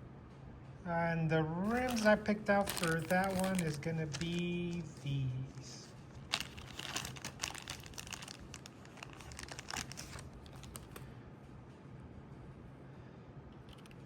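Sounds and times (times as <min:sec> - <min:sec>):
plastic packaging crinkling: 0:01.6 - 0:11.1.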